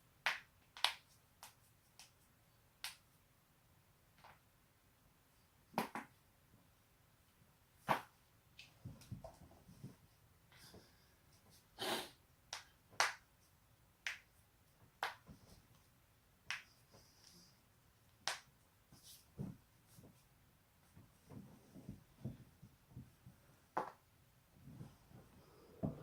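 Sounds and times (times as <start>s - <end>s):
soft dull thumps: 24.6s - 26.0s.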